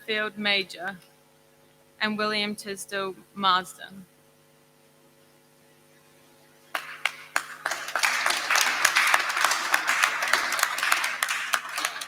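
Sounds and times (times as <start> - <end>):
audience applauding: 6.7 - 12.0.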